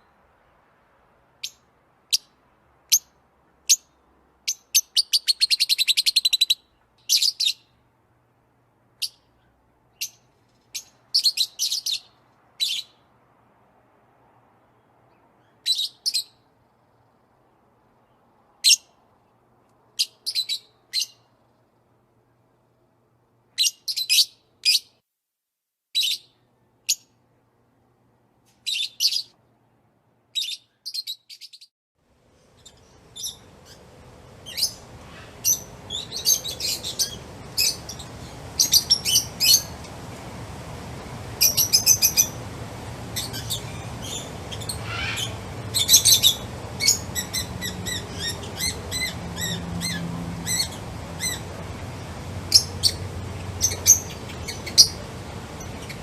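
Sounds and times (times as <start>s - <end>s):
outdoor ambience hiss: 0.0s - 25.1s, 25.9s - 56.0s
songbirds chirping: 32.3s - 56.0s.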